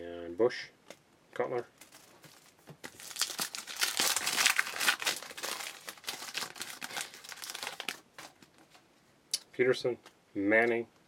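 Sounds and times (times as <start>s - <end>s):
wrapper being torn and crinkled: 1.8s - 8.6s.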